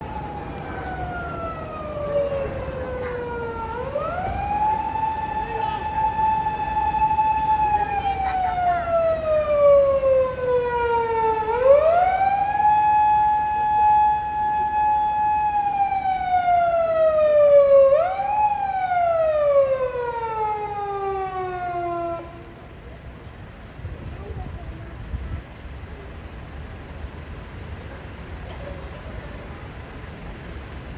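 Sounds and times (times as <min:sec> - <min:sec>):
police car siren wailing: 0:00.0 - 0:22.8.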